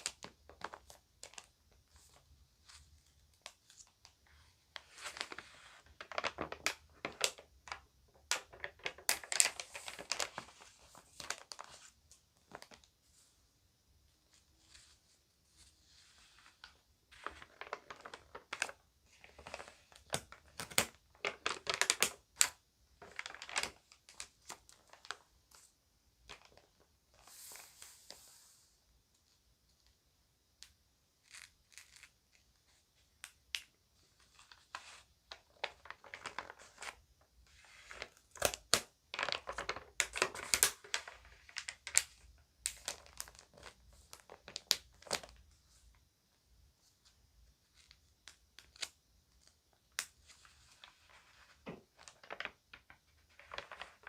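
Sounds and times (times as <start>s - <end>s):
magazine pages crinkling: 0.0s - 4.2s, 4.8s - 12.9s, 16.2s - 25.2s, 34.3s - 37.0s, 37.8s - 45.4s, 47.7s - 54.0s.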